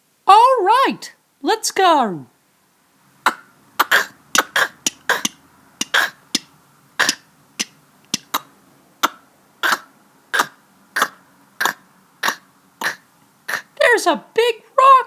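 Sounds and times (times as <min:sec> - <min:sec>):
person making breathy mouth clicks: 0:03.3 - 0:09.8.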